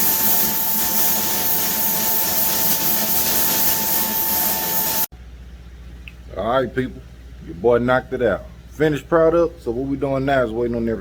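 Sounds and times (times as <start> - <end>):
spray gun hissing: 0.0 - 5.1
steady high tone: 0.0 - 5.1.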